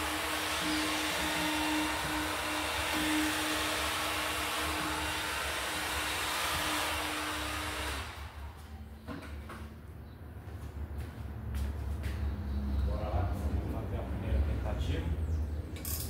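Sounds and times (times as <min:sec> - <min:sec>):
heat gun hot-air hiss: 0:00.0 - 0:08.3.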